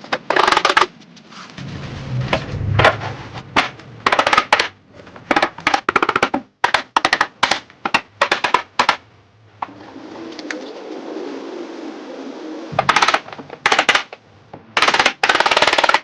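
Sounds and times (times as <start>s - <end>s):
wooden parts knocking together: 0.0s - 0.9s, 3.6s - 9.0s, 12.8s - 14.2s, 14.8s - 16.0s.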